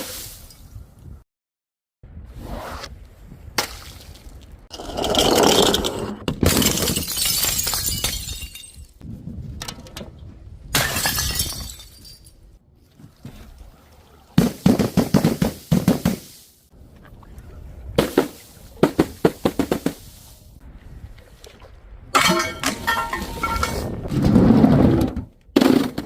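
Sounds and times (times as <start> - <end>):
glass bottles shattering: 6.4 - 9.0, 10.8 - 12.4, 22.2 - 24.0
glass shards clattering: 22.2 - 23.9.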